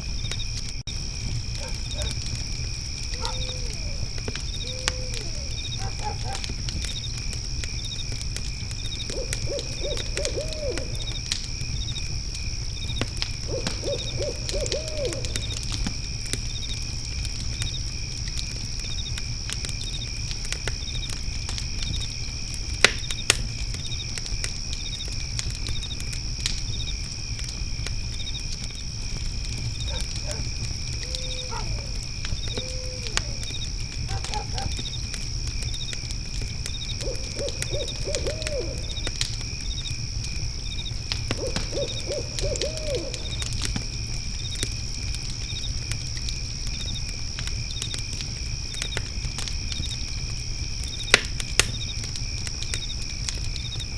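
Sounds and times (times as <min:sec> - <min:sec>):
crickets chirping: 0:00.0 - 0:53.9
fire crackling and popping: 0:00.0 - 0:53.9
owl hooting: 0:03.2 - 0:06.4, 0:09.1 - 0:11.1, 0:13.5 - 0:15.6, 0:29.9 - 0:31.9, 0:32.5 - 0:33.5, 0:37.0 - 0:39.0, 0:41.4 - 0:43.4.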